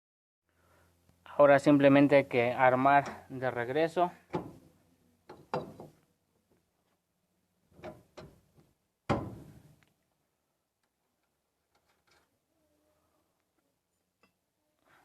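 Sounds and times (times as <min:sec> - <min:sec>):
metal tools knocking and clanking: 0:05.3 - 0:05.9.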